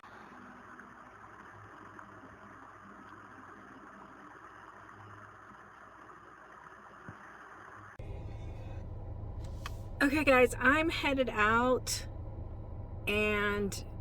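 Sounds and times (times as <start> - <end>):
car engine humming: 8.0 - 14.0.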